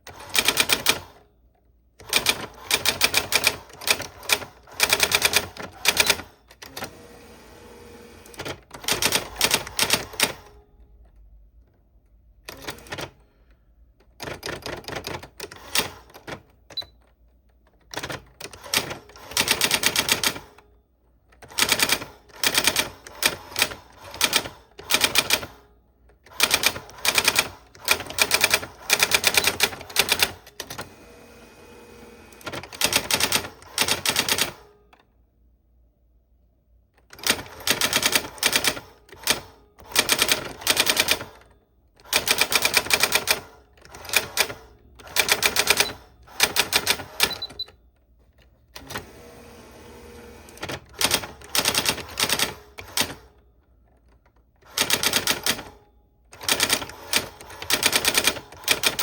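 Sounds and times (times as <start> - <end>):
typewriter key strikes: 54.6 - 55.7.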